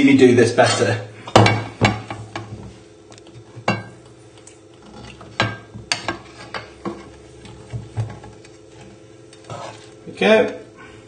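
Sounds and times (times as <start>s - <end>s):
spoon scraping and knocking a pan: 4.8s - 9.9s.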